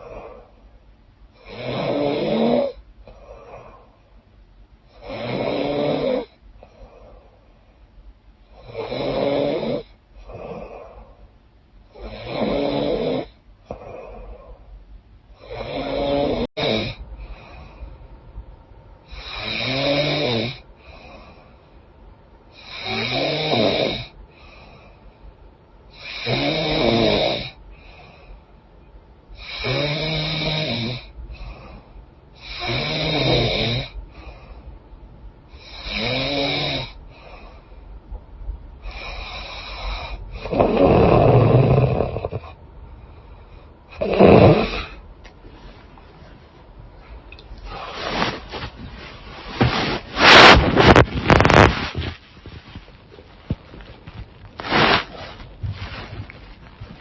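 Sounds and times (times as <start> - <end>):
faint breathing: 0.0 - 1.5, 3.0 - 5.1, 6.2 - 8.9, 9.8 - 12.1, 13.3 - 19.6, 20.6 - 23.1, 24.0 - 26.3, 27.5 - 29.8, 30.4 - 36.1, 36.8 - 57.0
woman snoring: 1.4 - 3.9, 5.0 - 7.2, 8.5 - 11.2, 11.9 - 14.5, 15.4 - 17.5, 19.1 - 21.4, 22.6 - 24.2, 26.0 - 28.0, 29.4 - 31.8, 32.4 - 34.4, 35.6 - 37.4, 38.8 - 42.6, 43.9 - 45.0.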